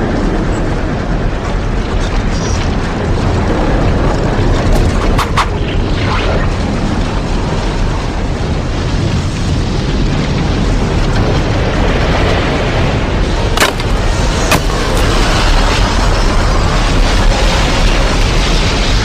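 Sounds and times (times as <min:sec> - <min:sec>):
dense wind with deep rumble: 0:00.0 - 0:19.0
sharp cracks: 0:13.2 - 0:19.0.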